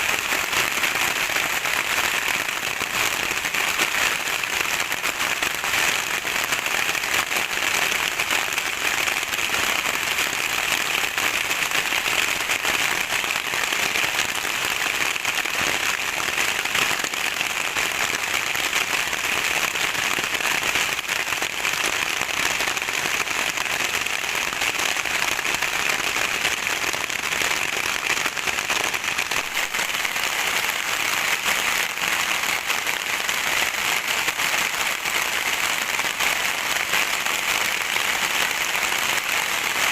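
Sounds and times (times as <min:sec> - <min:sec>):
steady rain: 0:00.0 - 0:39.9.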